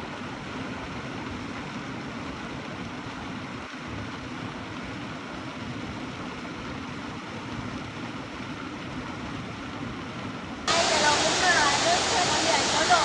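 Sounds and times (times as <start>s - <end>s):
waterfall roaring: 10.7s - 13.0s.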